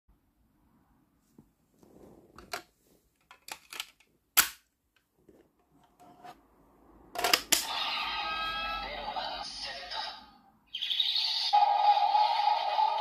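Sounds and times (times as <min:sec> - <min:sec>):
plastic toy clicks and snaps: 0:03.4 - 0:04.6
toy electronic sound effect: 0:07.5 - 0:13.0.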